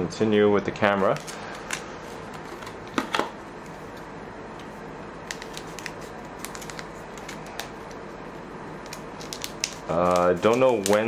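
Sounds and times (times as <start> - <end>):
cards clicking: 5.2 - 8.0, 8.9 - 11.0
cards ticking and rustling: 5.2 - 8.0, 8.8 - 11.0.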